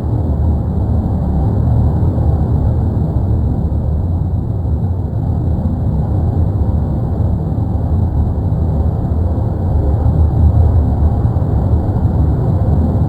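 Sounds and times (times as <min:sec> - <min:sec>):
deep volcano rumble: 0:00.0 - 0:13.0.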